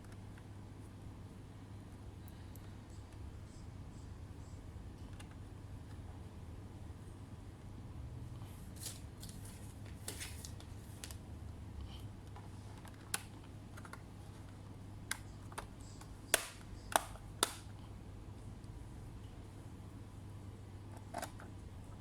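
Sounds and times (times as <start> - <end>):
low steady hum: 0.0 - 22.0
plastic clicks from laptop handling: 12.3 - 17.7.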